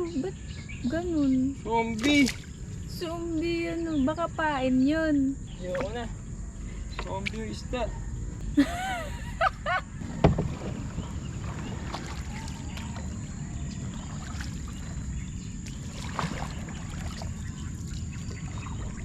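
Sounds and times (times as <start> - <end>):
wind: 0.0 - 19.0
knock against boat: 10.0 - 10.8
water wash: 10.0 - 19.0.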